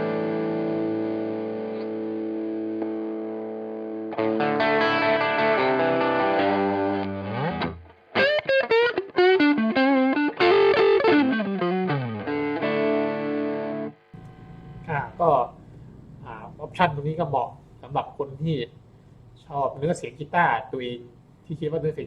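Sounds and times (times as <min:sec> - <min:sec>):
overdriven electric guitar: 0:00.0 - 0:16.8.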